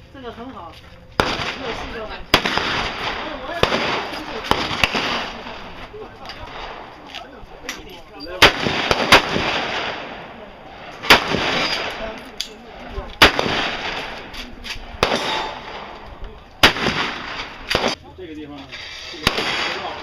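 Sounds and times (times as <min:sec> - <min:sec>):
loud gunshots with ringing echo: 0:01.2 - 0:07.0, 0:08.4 - 0:18.0, 0:19.2 - 0:20.0
faint distant gunshots: 0:01.2 - 0:07.1, 0:08.4 - 0:18.0.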